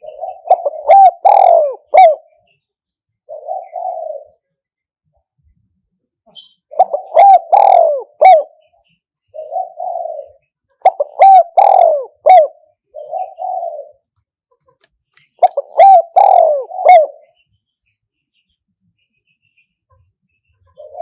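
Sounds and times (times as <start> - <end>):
dove cooing: 0.0 - 2.4, 3.3 - 4.4, 6.7 - 8.6, 9.3 - 14.1, 15.4 - 17.4, 20.8 - 21.0.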